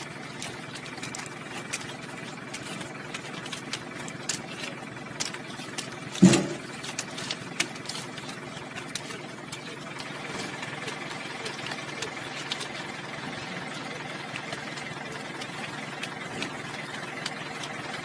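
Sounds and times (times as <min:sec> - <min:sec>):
engine running: 0:00.0 - 0:18.0
sharp clicks and knocks: 0:05.1 - 0:10.9
loud thump: 0:06.2 - 0:06.6.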